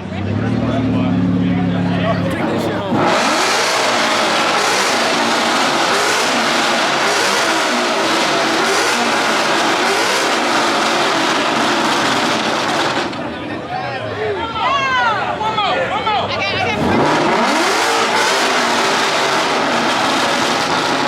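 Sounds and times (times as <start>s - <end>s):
car engine revving hard: 1.9s - 13.3s, 16.7s - 21.0s.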